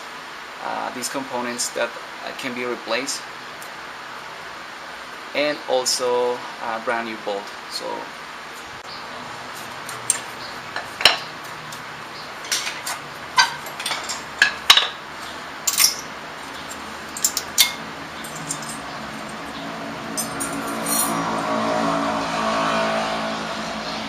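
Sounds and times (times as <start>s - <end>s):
metallic clinks of brake parts and tools: 12.4s - 21.3s.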